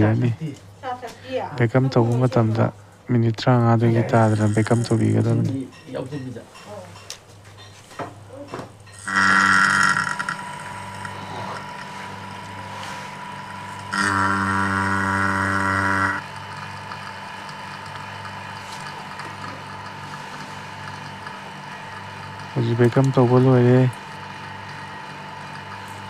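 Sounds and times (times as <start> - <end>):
vacuum pump motor hum: 4.0 - 5.5, 9.0 - 26.0.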